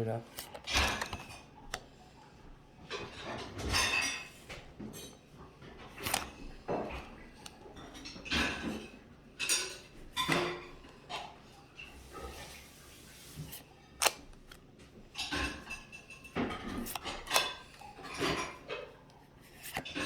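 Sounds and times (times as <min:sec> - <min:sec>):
cards sliding: 0:00.3 - 0:02.0, 0:05.8 - 0:07.6, 0:12.6 - 0:14.7, 0:16.7 - 0:17.9, 0:19.4 - 0:20.0
sharp clicks and snaps: 0:14.0 - 0:14.6.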